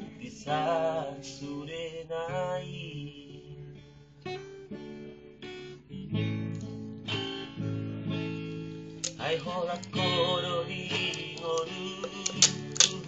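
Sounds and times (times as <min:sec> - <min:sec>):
person singing: 0:00.0 - 0:03.5, 0:09.1 - 0:13.0
acoustic guitar strumming: 0:00.0 - 0:13.0.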